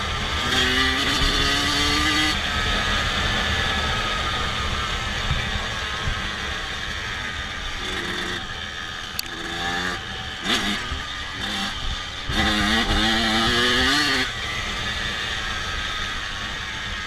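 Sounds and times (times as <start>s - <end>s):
dirt bike engine revving: 0.0s - 17.0s.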